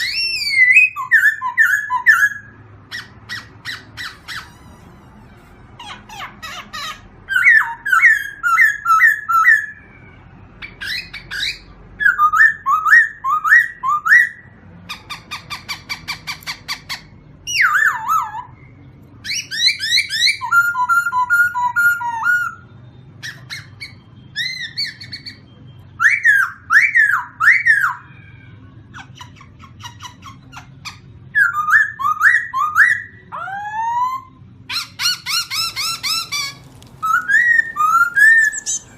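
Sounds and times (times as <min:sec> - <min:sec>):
songbird whistles and trills: 0:00.0 - 0:05.2, 0:05.8 - 0:38.9.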